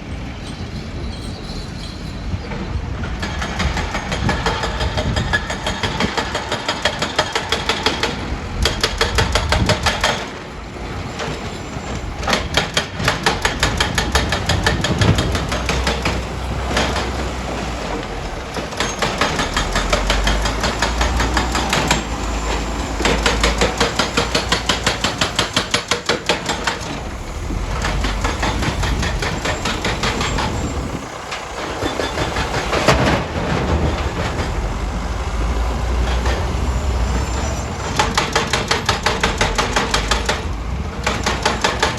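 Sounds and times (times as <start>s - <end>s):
diesel engine rumble: 7.0s - 41.9s
rapid metallic clanking: 11.2s - 41.9s.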